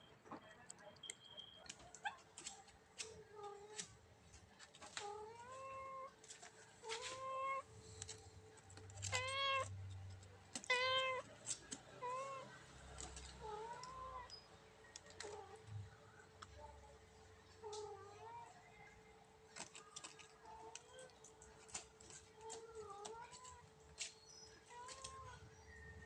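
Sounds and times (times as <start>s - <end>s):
kitten meowing: 10.6s - 11.2s.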